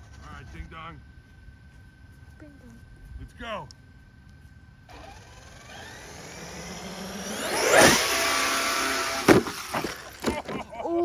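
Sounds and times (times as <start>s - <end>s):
electric motor whining: 4.9s - 10.3s
tyres churning dirt: 4.9s - 11.0s
toy truck hitting ground: 5.0s - 10.7s.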